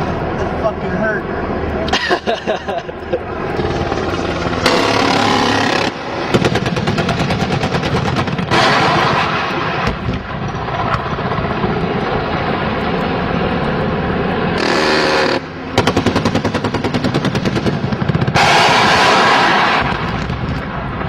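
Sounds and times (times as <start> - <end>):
helicopter engine and rotor: 0.0 - 18.4
cannon firing bursts: 3.5 - 13.4, 14.2 - 21.0.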